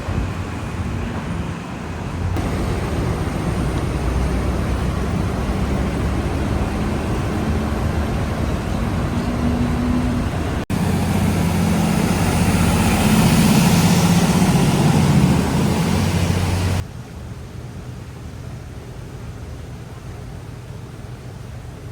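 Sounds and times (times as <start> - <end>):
road traffic: 0.0 - 16.9
boat engine running: 2.4 - 16.8.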